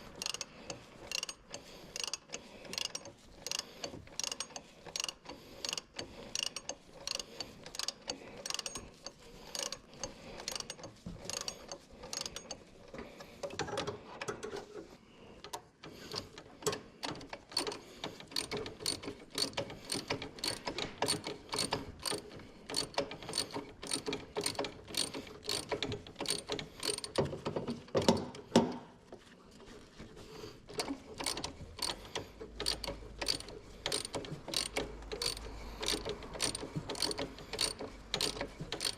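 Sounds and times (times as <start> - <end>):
ratchet wrench clicking: 0.1 - 12.6, 17.0 - 27.2, 30.8 - 38.9.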